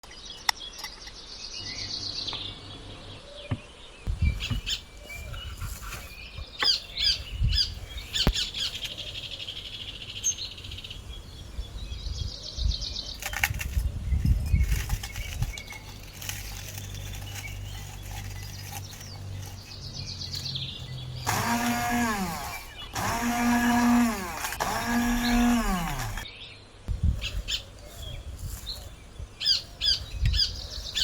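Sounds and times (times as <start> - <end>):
small birds chirping and trilling: 0.0 - 31.0
low thuds: 3.5 - 5.5.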